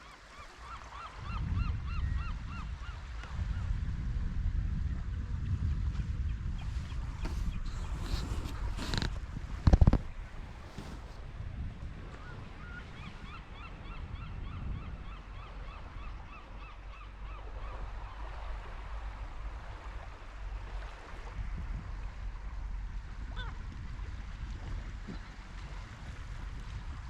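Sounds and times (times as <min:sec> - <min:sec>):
low wind rumble: 0:01.2 - 0:27.0
gull calling: 0:23.3 - 0:23.6.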